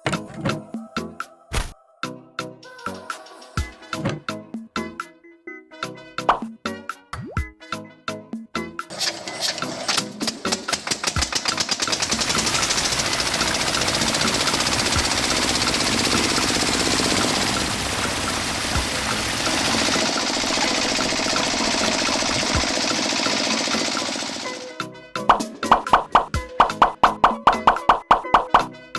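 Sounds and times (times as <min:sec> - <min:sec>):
small motor mechanical rattle: 0:08.9 - 0:24.8.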